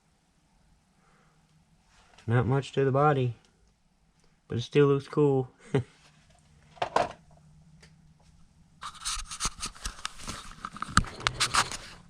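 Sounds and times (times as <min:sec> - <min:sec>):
plastic scraping and rustling: 0:08.8 - 0:12.0.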